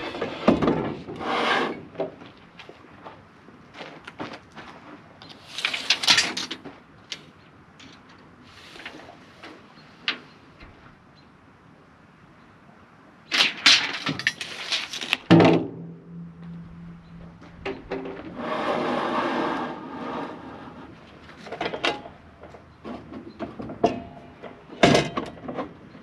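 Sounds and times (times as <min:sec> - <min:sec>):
scraping: 0:13.4 - 0:22.1
knocks and clatter: 0:15.2 - 0:18.4
thud: 0:15.3 - 0:18.4
steady hum: 0:15.6 - 0:21.0.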